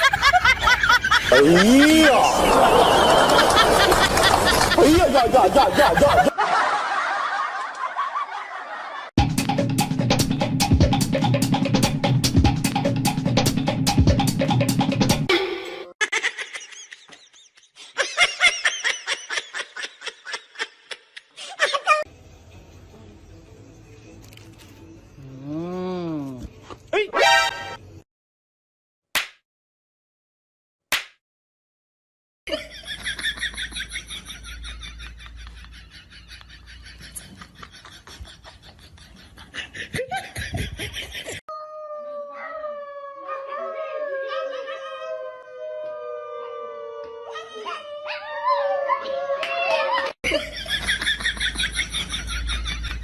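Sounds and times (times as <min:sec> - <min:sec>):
person laughing: 0:00.0 - 0:06.7, 0:15.3 - 0:22.1, 0:32.5 - 0:41.4
high-pitched laughter: 0:00.0 - 0:08.9, 0:15.3 - 0:22.1, 0:49.0 - 0:53.0
drum-backed music: 0:09.2 - 0:15.3.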